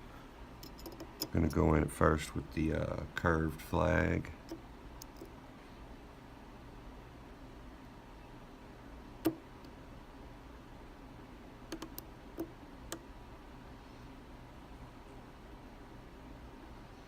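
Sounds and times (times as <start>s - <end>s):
lock pick clicking in lock: 0.6s - 1.3s.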